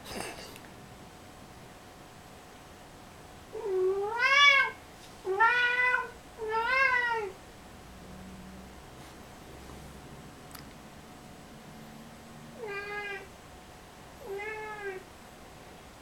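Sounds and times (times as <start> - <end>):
cat yowling meows: 3.6 - 7.4, 12.6 - 13.3, 14.2 - 15.0.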